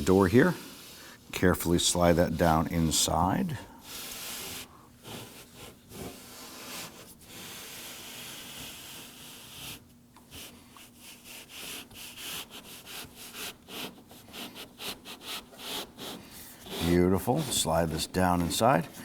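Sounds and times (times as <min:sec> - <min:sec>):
short rubbing strokes: 0:10.4 - 0:18.9.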